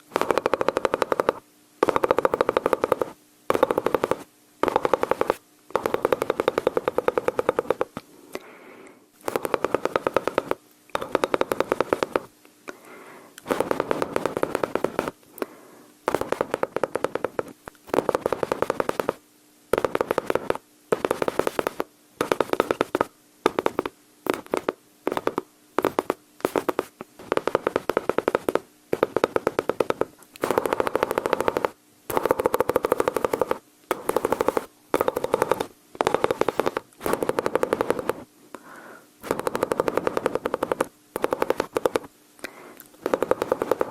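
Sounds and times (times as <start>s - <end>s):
mouth imitating machine-gun fire: 0.0s - 7.9s, 9.2s - 12.3s, 13.4s - 15.1s, 16.1s - 38.3s, 39.2s - 43.9s.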